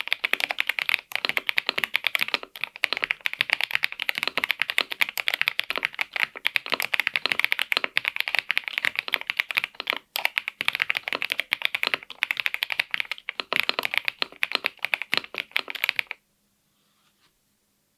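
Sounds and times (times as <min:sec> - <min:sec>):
mechanical keyboard typing: 0:00.0 - 0:16.2.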